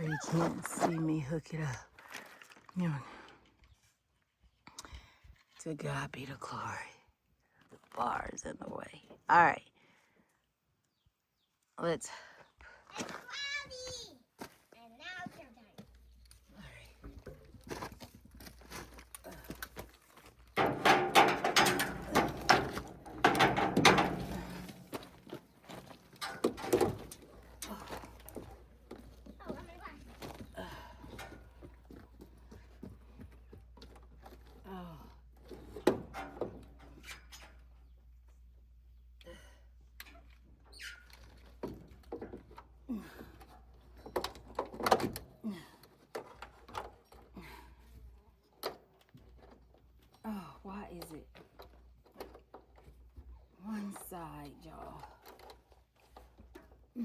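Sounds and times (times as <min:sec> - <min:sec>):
hose coupling clanking on metal: 0:20.5 - 0:29.6, 0:35.4 - 0:37.8, 0:43.3 - 0:47.3
metal knocks scrapes and rattles: 0:20.5 - 0:29.7, 0:35.4 - 0:37.8.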